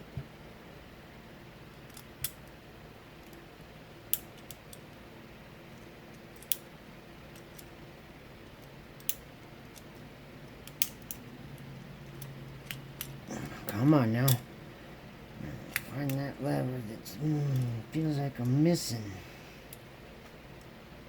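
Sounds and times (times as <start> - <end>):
metallic clicks of lock picking: 6.4 - 6.6, 10.6 - 11.2.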